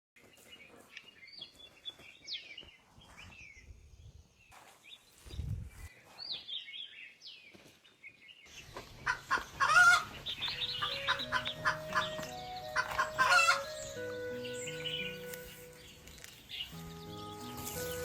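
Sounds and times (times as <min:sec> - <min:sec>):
chickens clucking: 0:08.6 - 0:14.2
soft music with held notes: 0:09.8 - 0:18.0.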